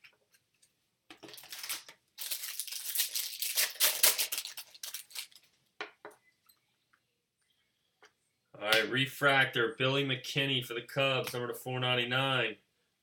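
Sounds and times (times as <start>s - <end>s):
plastic wrapper ripping and crinkling: 1.1s - 5.6s.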